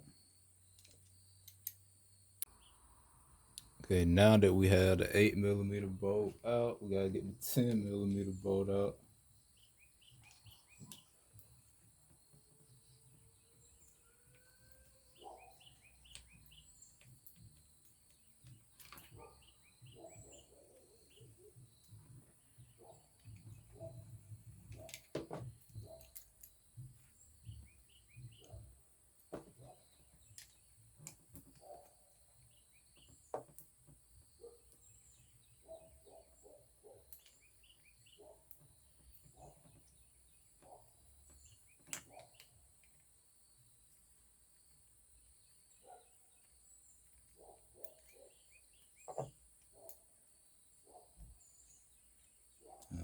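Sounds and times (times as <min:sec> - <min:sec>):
faint steady hiss: 0:00.0 - 0:09.2
birds chirping: 0:00.0 - 0:53.0.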